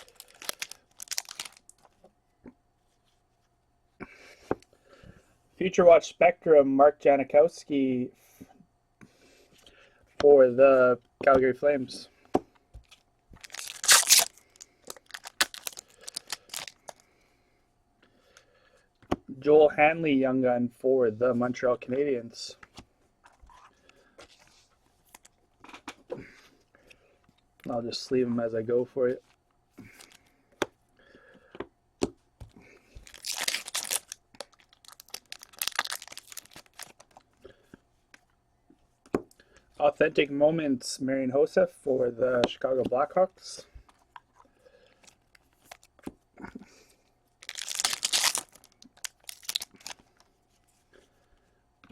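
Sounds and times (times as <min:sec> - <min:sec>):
rustle of cards and wrappers: 0:00.0 - 0:02.0, 0:12.8 - 0:17.1, 0:32.4 - 0:38.3, 0:43.6 - 0:46.1, 0:47.4 - 0:51.1
plastic sleeves crinkling: 0:00.0 - 0:02.1, 0:12.8 - 0:17.0, 0:32.8 - 0:37.4, 0:44.0 - 0:46.1, 0:47.4 - 0:50.8.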